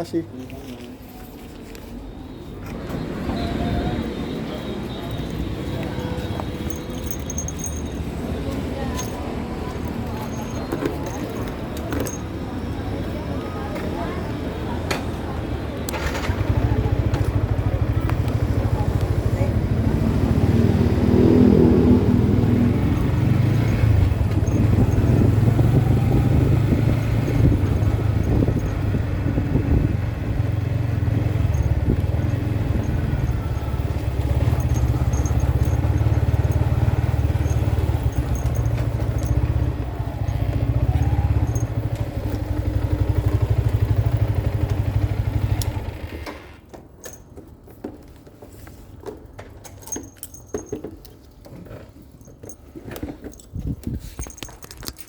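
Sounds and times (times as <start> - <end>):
motorcycle engine rumbling: 2.4 - 46.2.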